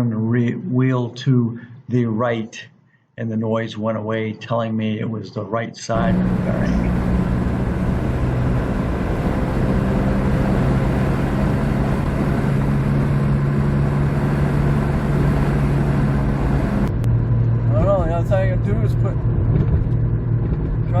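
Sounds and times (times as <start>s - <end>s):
road and tyre noise: 5.9s - 21.0s.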